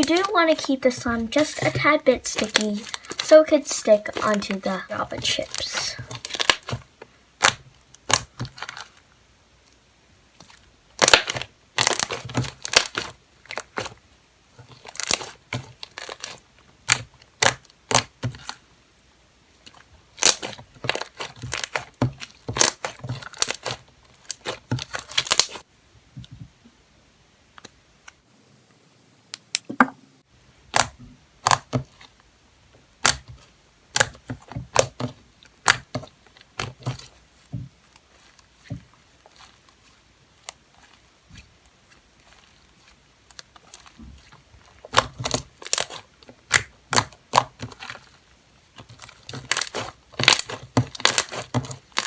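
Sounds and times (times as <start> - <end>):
slime sticky clicks and pops: 30.7 - 31.8, 33.0 - 33.3, 35.6 - 35.9.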